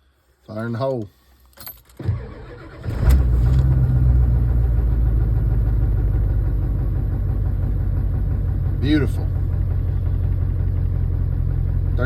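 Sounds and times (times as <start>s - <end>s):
diesel truck engine idling: 3.6s - 12.0s.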